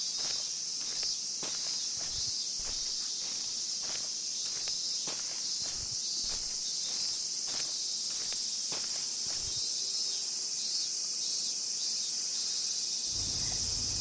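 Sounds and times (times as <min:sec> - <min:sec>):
cicadas buzzing: 0:00.0 - 0:14.0
soft footsteps: 0:00.2 - 0:09.6.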